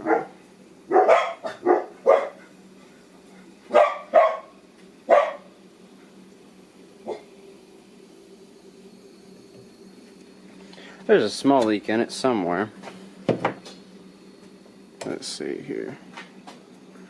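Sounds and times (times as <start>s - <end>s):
dog barking: 0.0s - 0.3s, 0.9s - 2.4s, 3.7s - 4.5s, 5.1s - 5.5s
electric air compressor humming: 0.0s - 17.0s.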